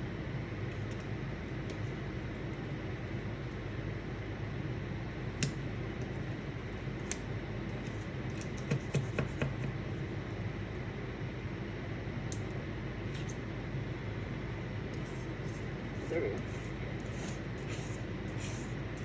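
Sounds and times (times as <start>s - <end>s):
low background hum: 0.0s - 19.0s
scraper scratching burnt crust: 15.0s - 18.8s.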